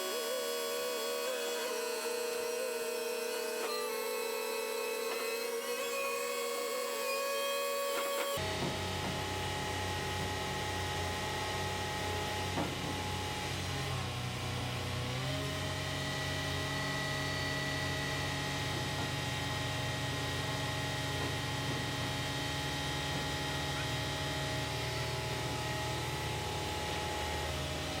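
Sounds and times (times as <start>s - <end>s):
diesel crane engine running: 7.8s - 28.0s.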